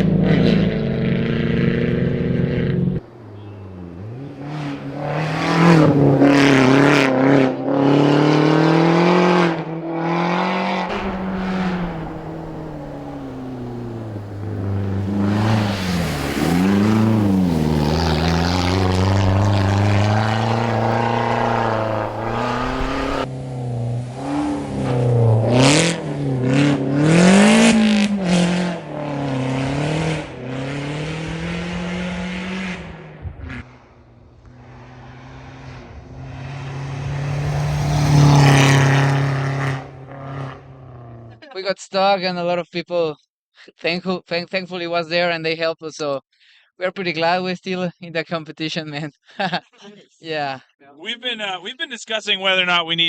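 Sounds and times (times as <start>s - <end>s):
car engines revving hard: 0.0s - 41.4s.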